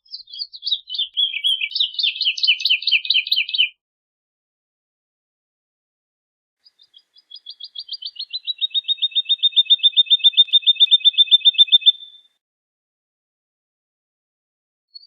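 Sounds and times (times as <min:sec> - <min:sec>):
woodlark singing: 0:00.0 - 0:03.8, 0:06.6 - 0:12.3.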